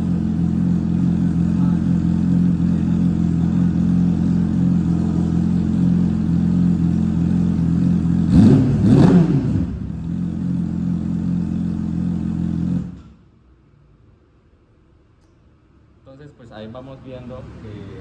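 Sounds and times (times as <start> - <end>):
motorcycle engine idling and revving: 0.0 - 13.4.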